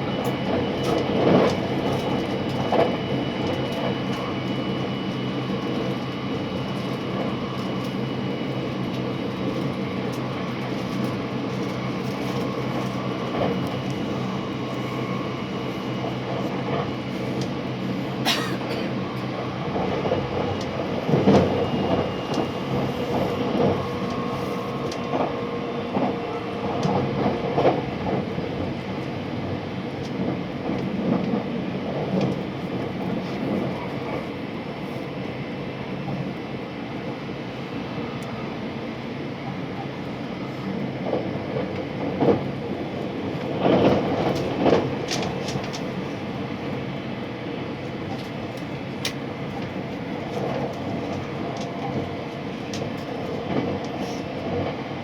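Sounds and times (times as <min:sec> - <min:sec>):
train cabin rumble: 0:00.0 - 0:55.0.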